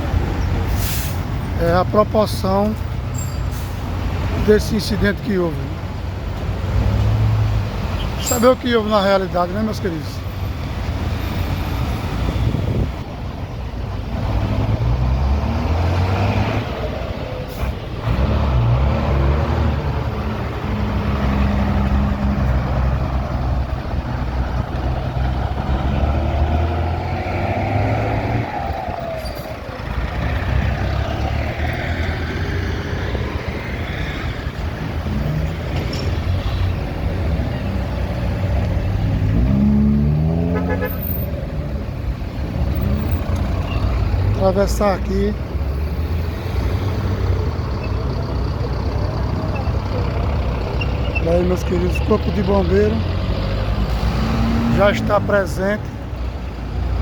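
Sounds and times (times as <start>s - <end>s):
truck and car engines running: 0.0s - 57.0s.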